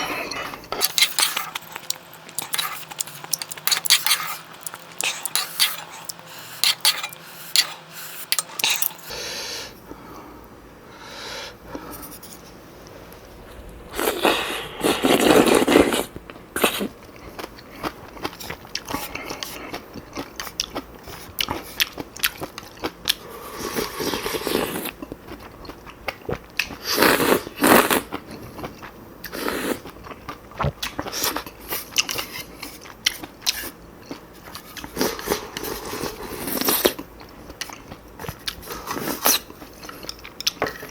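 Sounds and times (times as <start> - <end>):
wet chewing: 0.3 - 9.1.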